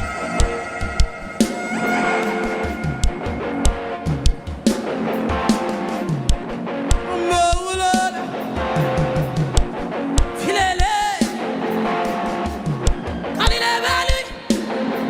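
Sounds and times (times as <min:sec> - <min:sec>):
person singing: 0:00.0 - 0:04.0, 0:10.4 - 0:11.5, 0:13.4 - 0:15.0.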